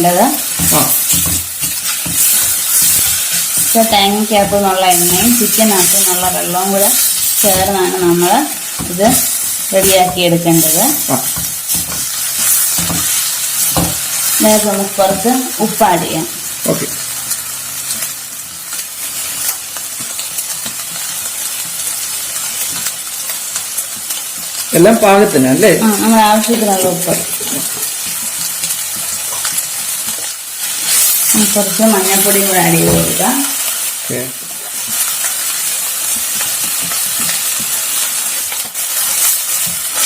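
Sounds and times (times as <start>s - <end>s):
food sizzling in oil: 0.0s - 40.0s
spoon stirring in pan: 0.4s - 14.4s.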